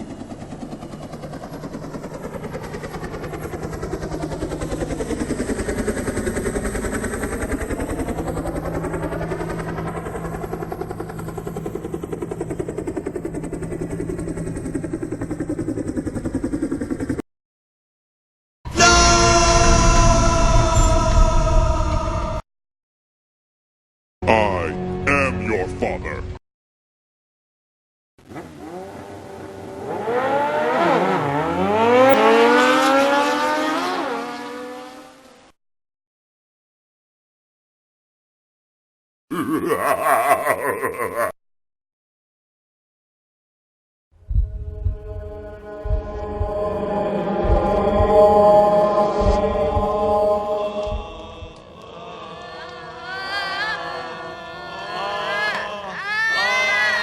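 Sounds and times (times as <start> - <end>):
machine pulsing rotor beat: 0.0 - 17.2, 44.2 - 53.0
car engine accelerating: 28.2 - 35.5
steady low hum: 44.2 - 52.5.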